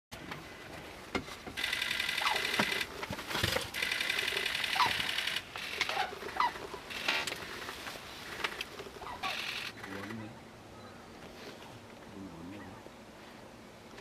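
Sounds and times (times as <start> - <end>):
cranes calling: 1.5 - 11.6.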